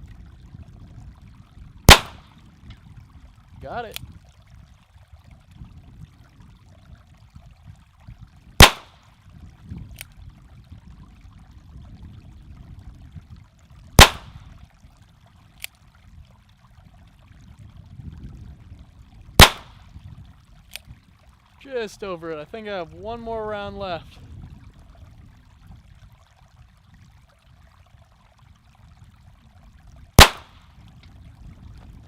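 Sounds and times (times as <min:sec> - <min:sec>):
revolver gunshots: 0:01.9 - 0:02.3, 0:08.6 - 0:09.0, 0:14.0 - 0:14.4, 0:19.4 - 0:19.8, 0:30.2 - 0:30.6.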